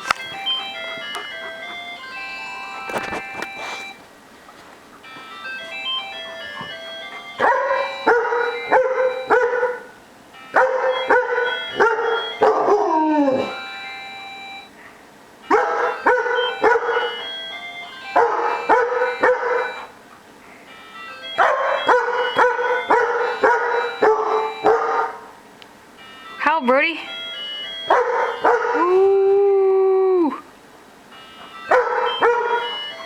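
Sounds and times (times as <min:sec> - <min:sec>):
phone alarm ringtone: 0:00.0 - 0:04.1, 0:05.0 - 0:14.8, 0:15.4 - 0:20.0, 0:20.7 - 0:25.4, 0:26.0 - 0:29.3, 0:31.1 - 0:33.0
dog howling: 0:10.6 - 0:13.6, 0:27.9 - 0:30.5.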